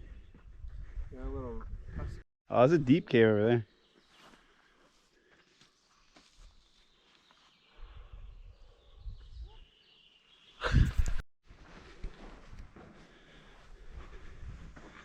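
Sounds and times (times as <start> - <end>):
wind buffeting microphone: 0.0 - 2.2.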